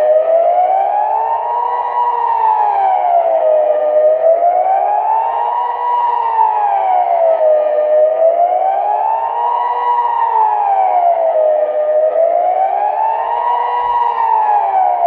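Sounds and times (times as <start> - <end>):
civil defence siren wailing: 0.0 - 15.0.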